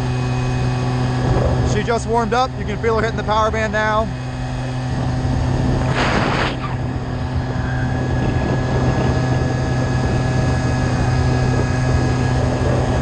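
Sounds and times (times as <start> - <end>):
two-stroke scooter engine running: 0.0 - 13.0.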